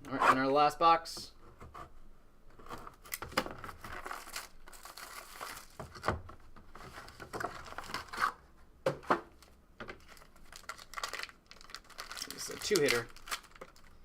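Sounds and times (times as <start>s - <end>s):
plastic wrapping crinkling: 2.7s - 6.1s, 6.8s - 8.4s, 9.9s - 14.0s.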